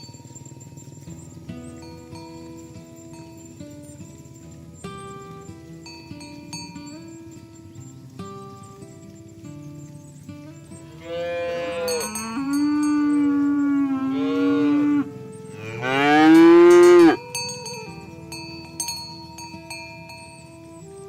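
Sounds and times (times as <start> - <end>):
cattle mooing: 10.8 - 17.3.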